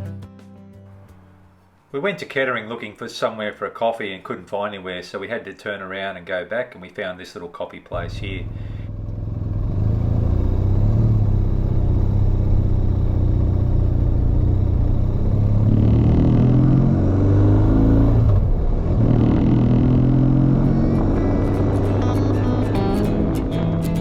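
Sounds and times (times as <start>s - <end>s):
motorcycle engine accelerating: 8.0s - 24.0s.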